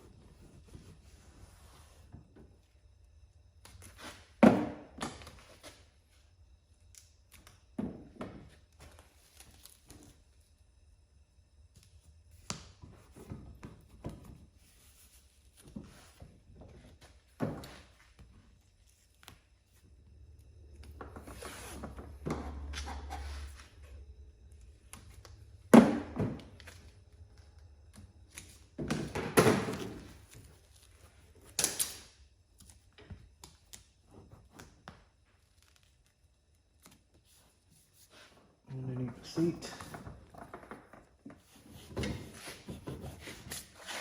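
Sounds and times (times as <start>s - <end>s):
tape rustling: 30.0s - 38.2s.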